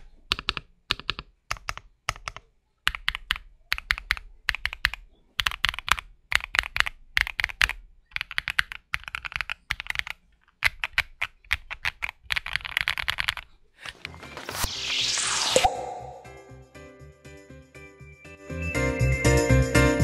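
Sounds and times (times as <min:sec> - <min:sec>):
mechanical keyboard typing: 0:00.0 - 0:14.2
rising whoosh: 0:14.0 - 0:17.2.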